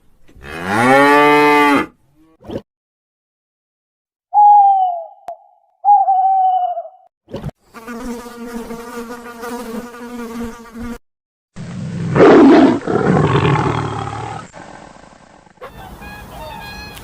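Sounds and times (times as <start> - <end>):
bee buzzing: 7.7 - 11.0
lion roaring: 12.1 - 15.4.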